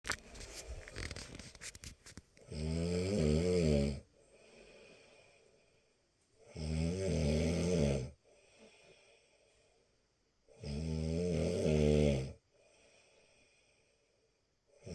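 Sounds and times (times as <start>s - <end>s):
person snoring: 2.5s - 4.0s, 6.5s - 8.2s, 10.6s - 12.4s
faint breathing: 4.1s - 6.1s, 8.2s - 10.0s, 12.5s - 14.4s.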